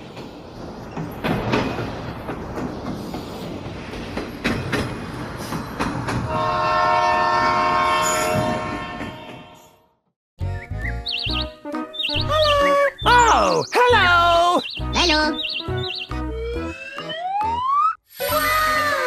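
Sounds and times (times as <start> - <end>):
train rumbling on rails: 0.0 - 10.0
train horn blast: 6.3 - 9.8.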